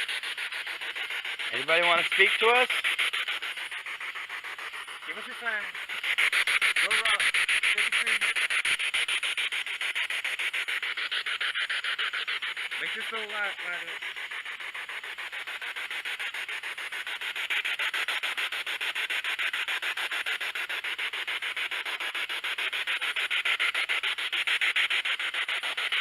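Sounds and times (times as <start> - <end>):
pulsing radio static: 0.0 - 17.0.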